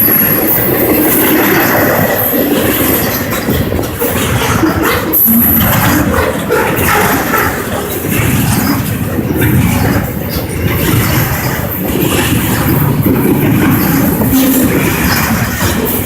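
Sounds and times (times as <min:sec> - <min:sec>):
freight train wheels rumbling: 0:00.0 - 0:16.0.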